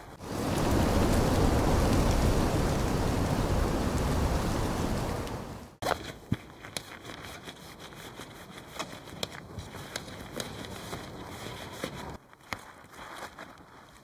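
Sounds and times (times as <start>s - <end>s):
tent clicks and crackles: 0.0s - 5.8s.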